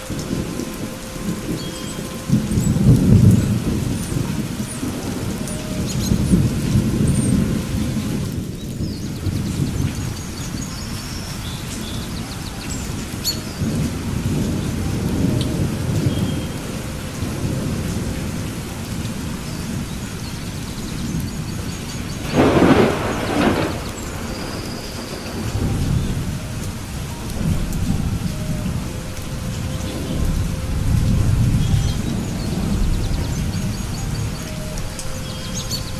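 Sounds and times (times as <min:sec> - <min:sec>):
steady rain: 0:00.0 - 0:35.9
thunder rumbling: 0:00.0 - 0:35.9
sharp thunderclap: 0:22.0 - 0:28.8.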